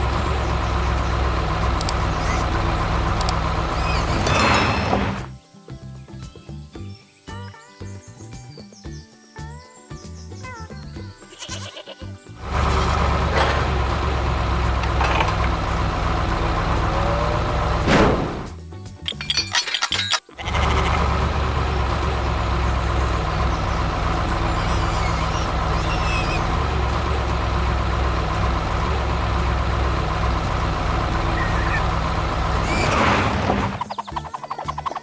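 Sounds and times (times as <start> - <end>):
large vehicle engine running: 0.0 - 5.3, 12.4 - 18.6, 20.4 - 34.2
brief clatter: 12.6 - 21.0.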